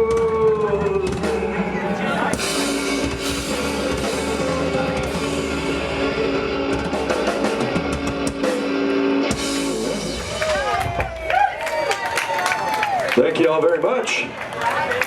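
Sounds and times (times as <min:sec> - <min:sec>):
drums and cymbals: 0:00.0 - 0:11.4
blues band playing: 0:00.0 - 0:11.6.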